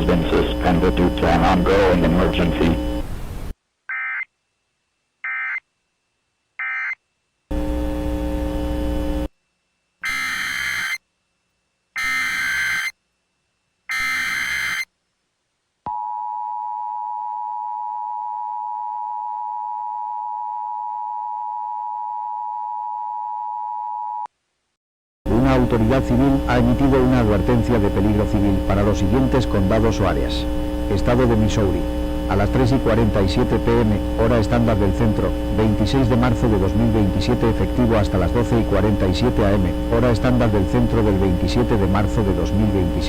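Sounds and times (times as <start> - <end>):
data tone bursts: 0.0 - 3.0, 10.0 - 11.0, 12.0 - 13.0, 13.9 - 14.9
harsh buzz: 0.0 - 3.5, 7.5 - 9.4, 10.0 - 11.0, 12.0 - 13.0, 13.9 - 14.9, 25.3 - 43.0
two-tone attention signal: 10.0 - 11.0, 12.0 - 12.9, 13.9 - 14.9.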